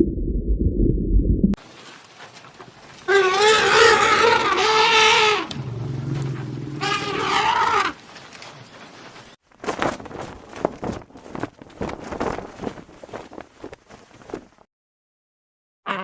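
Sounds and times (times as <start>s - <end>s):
low hum: 0.0s - 1.6s, 5.5s - 7.2s
wavering animal calls: 3.1s - 8.0s.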